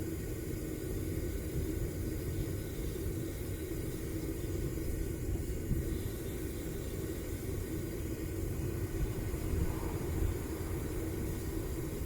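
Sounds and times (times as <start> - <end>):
propane burner rumbling: 0.0 - 12.0.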